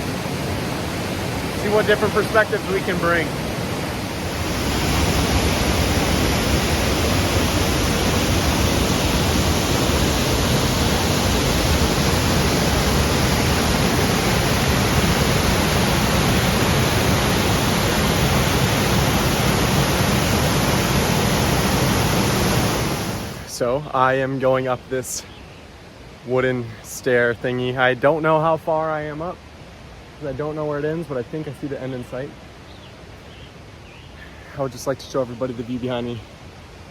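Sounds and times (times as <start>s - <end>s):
waterfall rushing: 0.0s - 23.8s.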